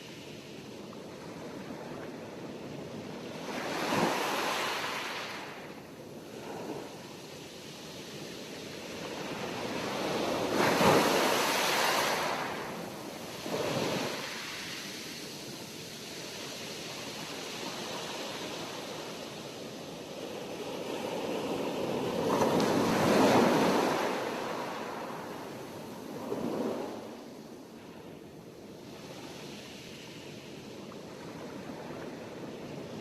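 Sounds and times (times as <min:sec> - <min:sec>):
surf hiss: 0:00.0 - 0:33.0
waves crashing: 0:09.3 - 0:15.4, 0:20.4 - 0:27.3.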